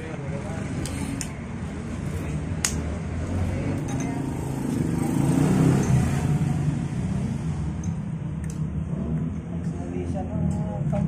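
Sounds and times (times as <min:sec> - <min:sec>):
vehicle engine passing by: 0:02.2 - 0:11.0.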